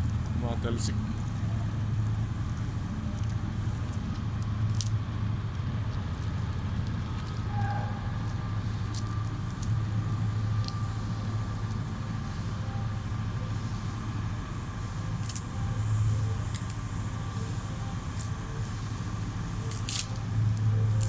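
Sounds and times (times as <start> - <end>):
faint steady whine: 0.0 - 21.0
generator engine humming: 0.0 - 21.0
sharp clicks and crackles: 2.0 - 9.8, 15.2 - 15.5, 16.4 - 16.8, 19.7 - 21.0.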